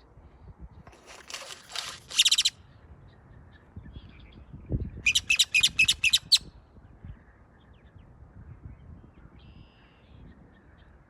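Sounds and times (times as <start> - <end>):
bird rattling call: 0.9 - 2.5, 5.1 - 6.4.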